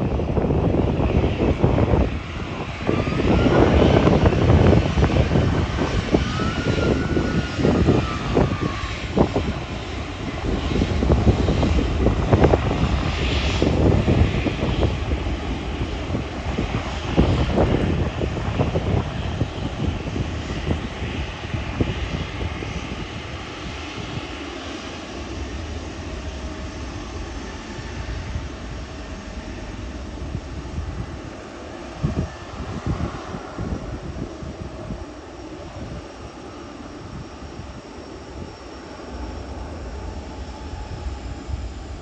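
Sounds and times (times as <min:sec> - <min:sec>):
jet airliner passing overhead: 0:00.0 - 0:42.0.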